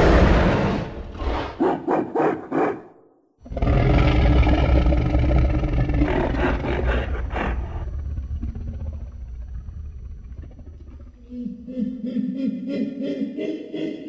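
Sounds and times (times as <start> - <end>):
monster roar: 3.4 - 7.9.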